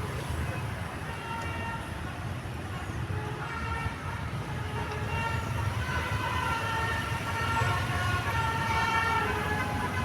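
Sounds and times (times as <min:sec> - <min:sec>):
multi-tone bus horn melody: 0:03.2 - 0:10.0.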